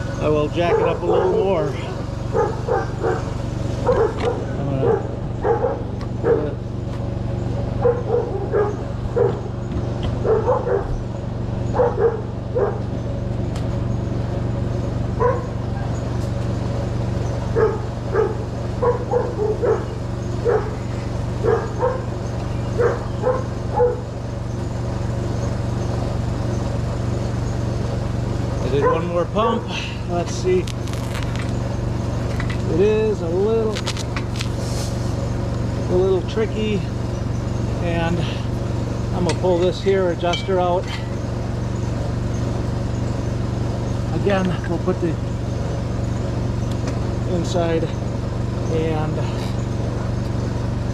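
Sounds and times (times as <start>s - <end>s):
dog barking: 0.6s - 6.6s, 7.8s - 9.5s, 10.2s - 11.0s, 11.7s - 12.8s, 15.2s - 15.9s, 17.6s - 20.8s, 21.4s - 22.1s, 22.7s - 24.1s, 28.7s - 29.1s.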